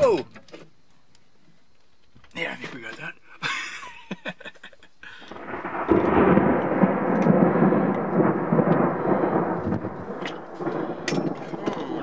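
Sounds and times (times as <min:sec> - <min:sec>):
thunder rolling rumble: 0:05.2 - 0:12.0.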